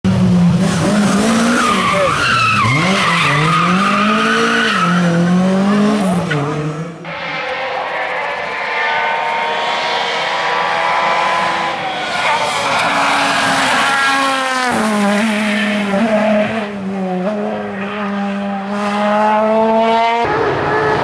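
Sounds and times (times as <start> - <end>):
rally car engine revving: 0.1 - 21.0
rally car engine steady high note: 5.2 - 12.8.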